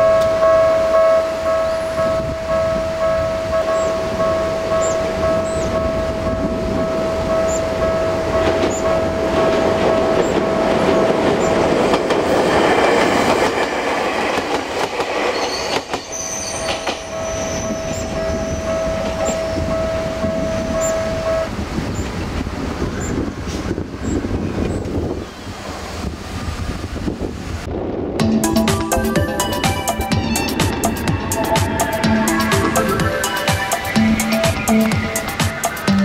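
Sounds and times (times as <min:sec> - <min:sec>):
electric train passing: 0:00.0 - 0:36.0
level crossing alarm tone: 0:28.2 - 0:36.0.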